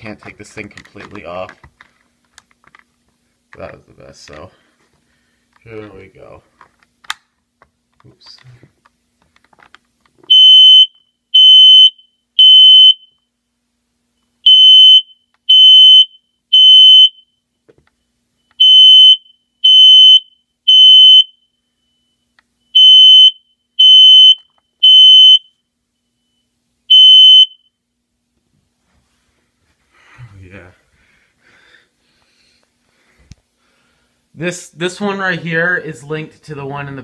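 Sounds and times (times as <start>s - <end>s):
smoke alarm beeping: 10.3s - 13.3s, 14.4s - 17.4s, 18.4s - 27.8s.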